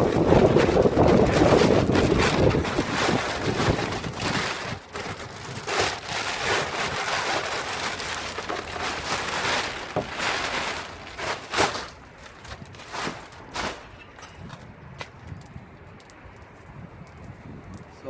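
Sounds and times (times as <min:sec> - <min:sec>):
wind on microphone: 0:00.0 - 0:08.1, 0:12.4 - 0:18.0.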